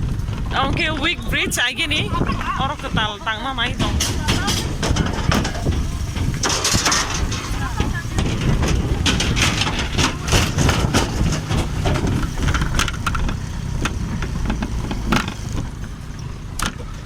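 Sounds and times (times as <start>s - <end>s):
engine running low rumble: 0.0s - 17.0s
sharp knocks and rattles: 3.6s - 17.0s.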